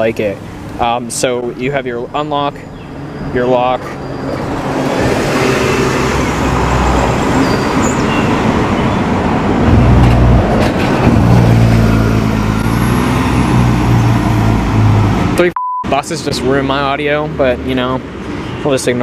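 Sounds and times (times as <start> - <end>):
buses driving past: 2.6 - 15.4.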